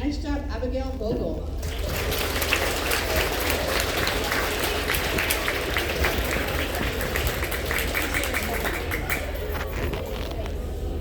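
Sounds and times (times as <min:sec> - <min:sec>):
crowd cheering: 0:01.6 - 0:09.6
crowd applauding in echoing gym: 0:01.6 - 0:09.9.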